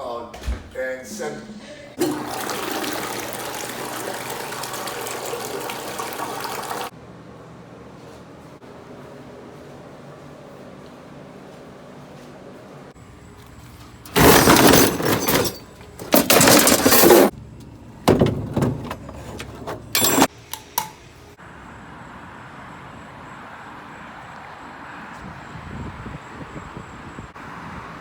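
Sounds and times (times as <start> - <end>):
loud clattering crashes: 14.1 - 17.3.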